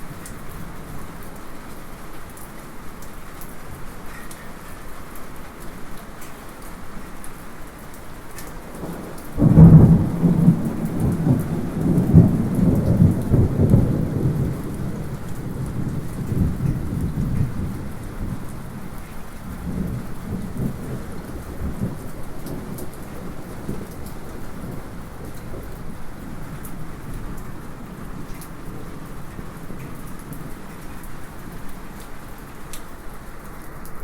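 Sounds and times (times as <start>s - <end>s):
light steady rain: 0.0s - 34.0s
rolling thunder rumbling low: 8.6s - 31.6s.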